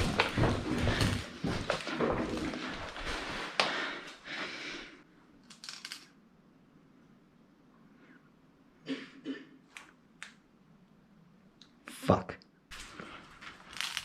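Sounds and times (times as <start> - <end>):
scuffing and rustling: 0.0 - 3.7.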